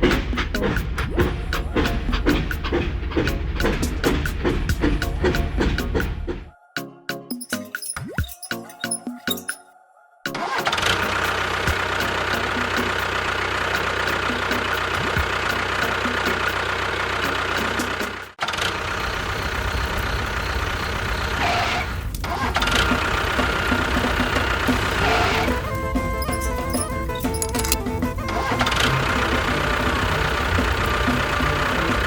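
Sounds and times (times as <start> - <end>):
engine running steadily: 10.9 - 32.0.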